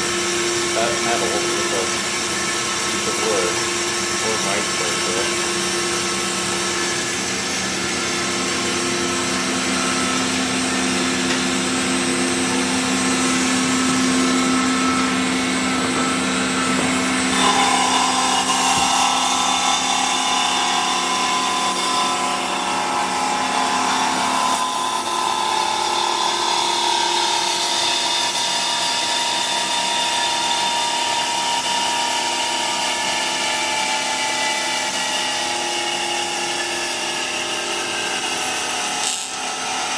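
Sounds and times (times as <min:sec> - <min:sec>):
band saw cutting wood: 0:00.0 - 0:39.9.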